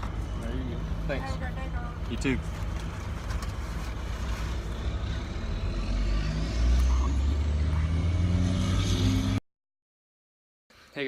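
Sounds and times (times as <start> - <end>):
vehicle engine humming: 0.0 - 9.4
high whine rising in pitch: 4.6 - 9.4.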